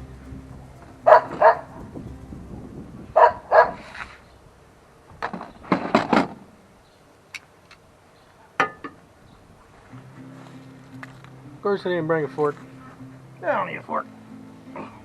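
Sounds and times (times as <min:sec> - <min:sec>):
dog barking: 0:01.1 - 0:01.7, 0:03.2 - 0:03.9.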